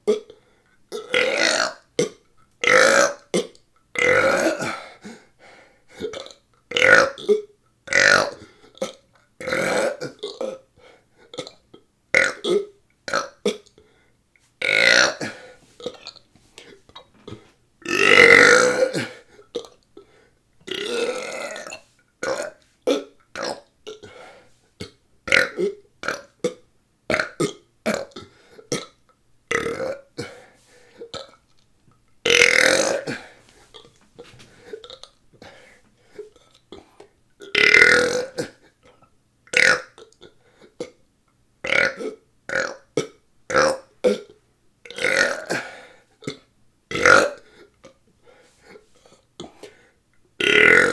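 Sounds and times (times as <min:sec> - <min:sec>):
person burping: 0:00.0 - 0:04.9, 0:06.2 - 0:10.6, 0:14.6 - 0:16.2, 0:17.2 - 0:19.8, 0:20.7 - 0:24.1, 0:24.8 - 0:26.3, 0:27.1 - 0:30.4, 0:32.3 - 0:35.0, 0:37.5 - 0:38.6, 0:41.6 - 0:47.4, 0:50.4 - 0:50.9.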